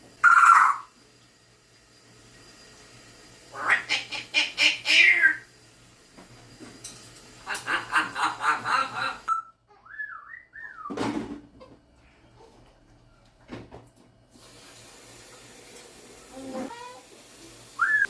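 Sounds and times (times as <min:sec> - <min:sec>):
parrot harsh call: 0:00.2 - 0:00.9, 0:03.5 - 0:05.5
parrot rapid pulsed calls: 0:00.2 - 0:01.0, 0:03.5 - 0:05.5, 0:17.8 - 0:18.0
parrot warbling whistle: 0:17.8 - 0:18.0.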